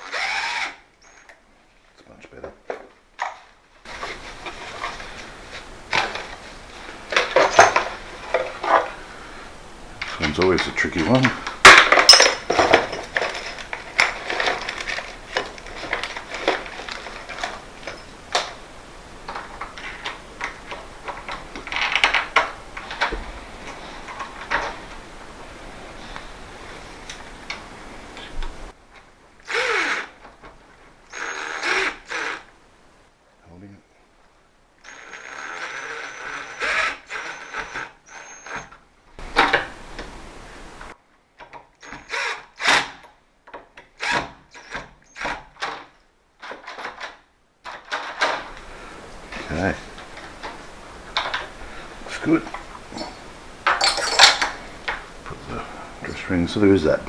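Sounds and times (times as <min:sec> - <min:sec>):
cordless drill whining: 0:00.0 - 0:01.3, 0:29.4 - 0:30.1, 0:31.1 - 0:32.5, 0:34.9 - 0:38.7, 0:41.8 - 0:42.9
metal hardware clicking and rattling: 0:10.0 - 0:18.5, 0:53.6 - 0:54.6.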